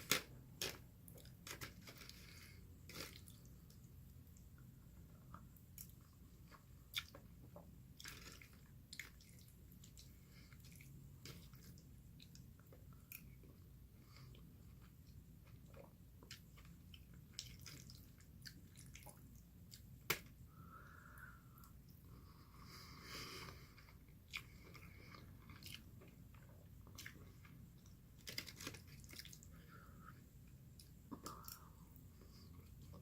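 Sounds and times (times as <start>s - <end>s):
chewing and eating mouth sounds: 0.1s - 20.0s, 23.5s - 29.8s.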